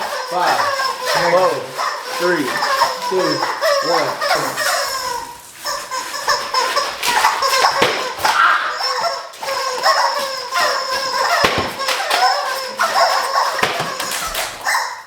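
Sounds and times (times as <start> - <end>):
voices: 0.0 - 14.5
squeaky rubber toys squeezed: 0.0 - 15.0
sharp knocks: 11.4 - 12.3, 13.5 - 14.4.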